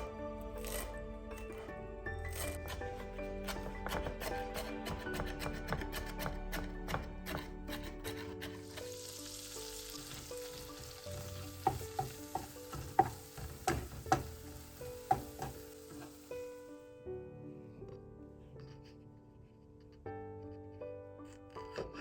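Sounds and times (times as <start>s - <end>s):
food sizzling in a frying pan: 8.6s - 16.6s
utensil knocking against pan: 11.2s - 16.1s.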